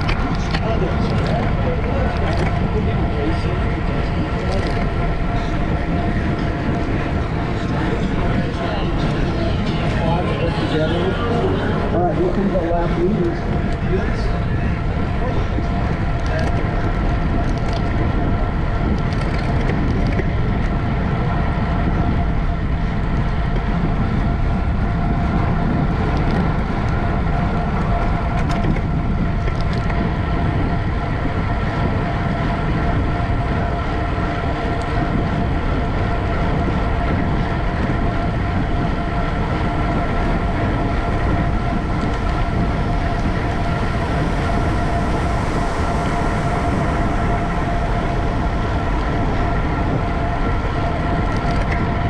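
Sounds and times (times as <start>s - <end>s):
bicycle rolling rumble and whine: 0.0s - 52.0s
wind rushing over microphone: 0.0s - 52.0s.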